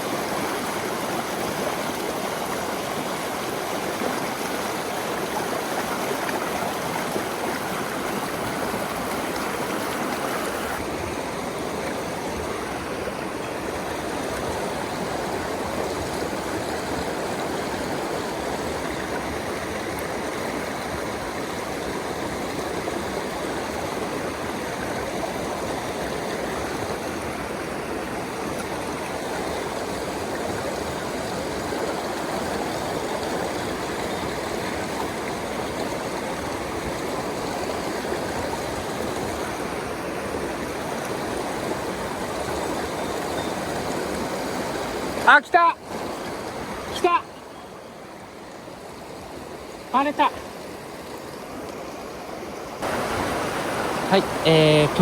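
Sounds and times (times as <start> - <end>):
stream water rushing: 0.0 - 55.0.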